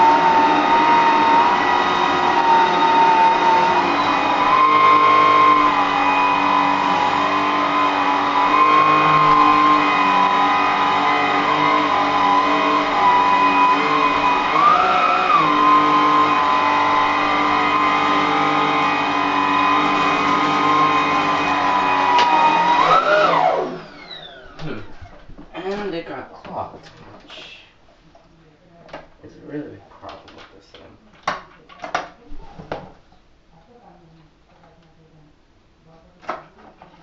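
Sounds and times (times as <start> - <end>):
vacuum cleaner motor whine: 0.0 - 25.3.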